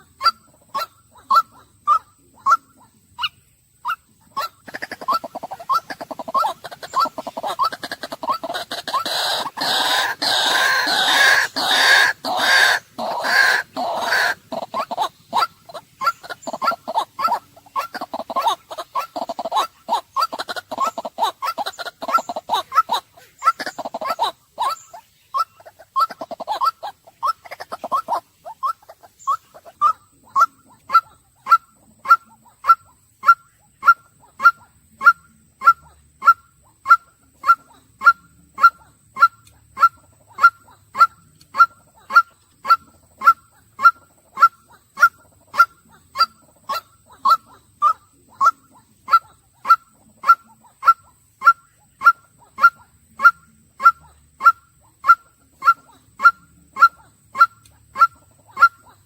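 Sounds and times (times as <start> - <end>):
waterhen calling: 0.0 - 59.0.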